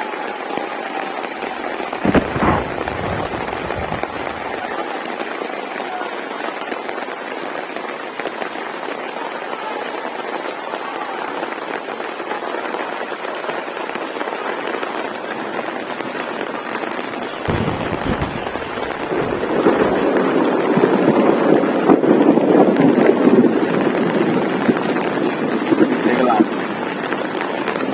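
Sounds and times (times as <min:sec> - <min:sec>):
steady rain falling: 0:00.0 - 0:27.9
low rumble: 0:02.0 - 0:04.5.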